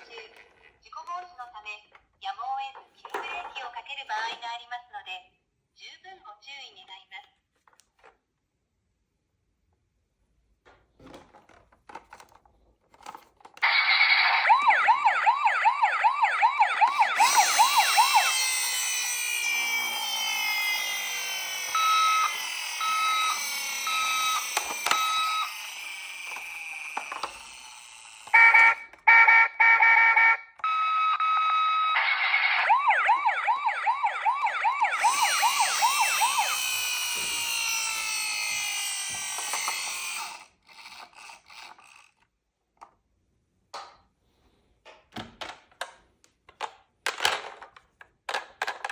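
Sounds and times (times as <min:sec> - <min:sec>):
toy electronic siren: 0:13.6 - 0:42.0.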